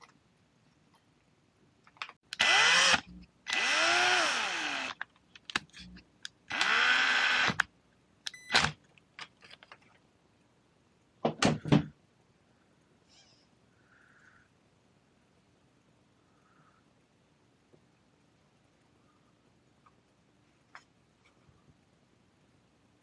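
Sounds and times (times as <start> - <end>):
power drill whining: 2.4 - 5.0, 6.5 - 7.6
small parts clicking and knocking: 8.5 - 10.0.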